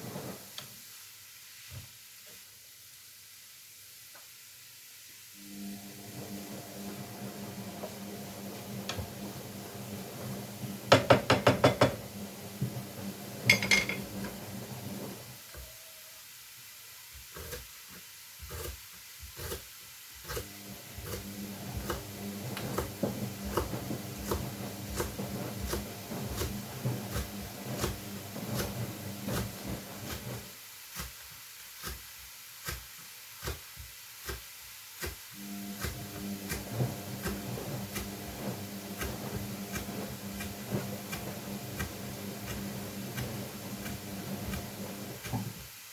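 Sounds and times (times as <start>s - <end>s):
washing machine hum: 0.0s - 0.8s, 5.3s - 45.9s
dishes rattling: 13.5s - 14.1s.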